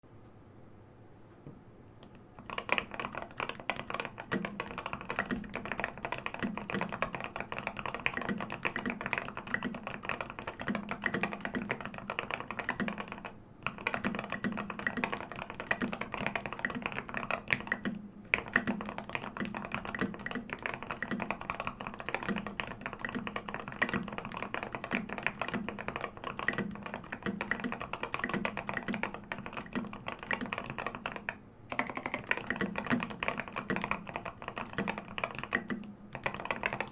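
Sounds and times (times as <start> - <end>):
fast typing on mechanical keyboard: 2.4 - 36.9.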